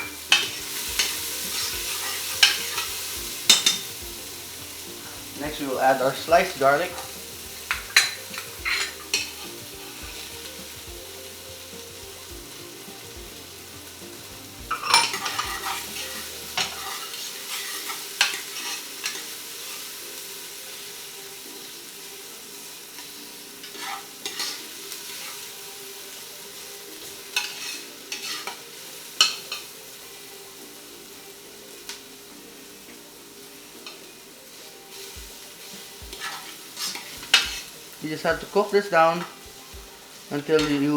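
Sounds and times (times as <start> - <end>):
utensil scraping pan: 0.0 - 19.2, 23.6 - 25.4, 27.4 - 28.6, 35.8 - 39.4
garlic and onions sizzling in pan: 0.0 - 40.9.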